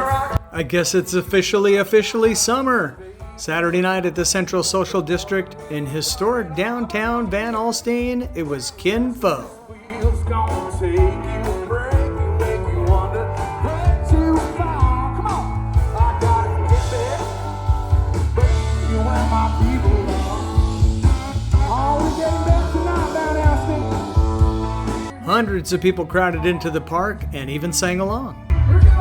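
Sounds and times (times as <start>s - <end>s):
person singing: 0.0s - 29.0s
drum beat: 7.1s - 25.7s
electric guitar: 9.6s - 25.3s, 28.3s - 29.0s
heavy steady bass: 9.9s - 29.0s.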